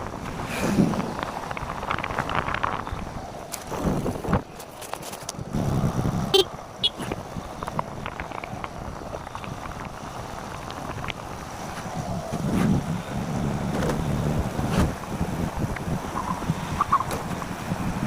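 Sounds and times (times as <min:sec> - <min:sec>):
vehicle road noise: 0:00.0 - 0:18.0
car horn toot: 0:06.3 - 0:07.0.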